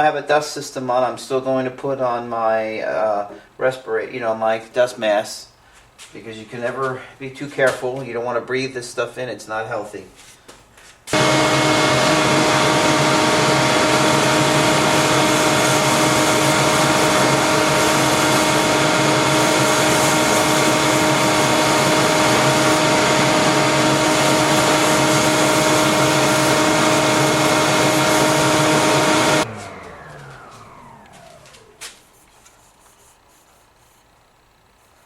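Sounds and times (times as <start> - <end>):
shop vacuum running: 11.1 - 35.0.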